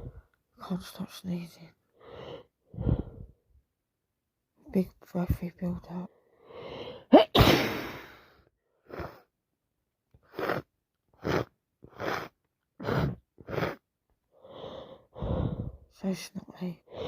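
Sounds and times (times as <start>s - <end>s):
woman sneezing: 7.1s - 8.1s.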